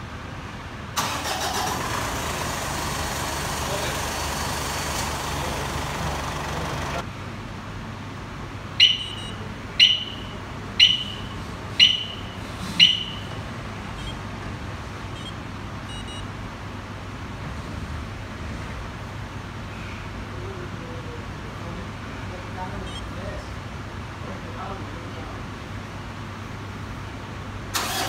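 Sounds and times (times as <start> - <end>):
short high electronic beeps: 8.8 - 13.4, 14.0 - 14.2, 15.2 - 16.2.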